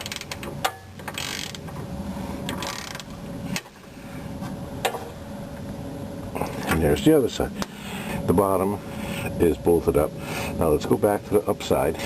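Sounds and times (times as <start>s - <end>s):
ratchet wrench clicking: 1.1s - 1.6s.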